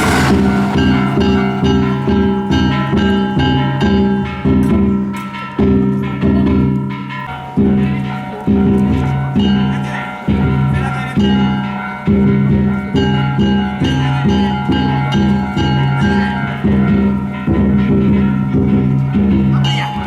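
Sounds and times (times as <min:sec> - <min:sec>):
small gongs ringing: 0:00.0 - 0:20.0
large drum beaten rhythmically: 0:16.6 - 0:20.0.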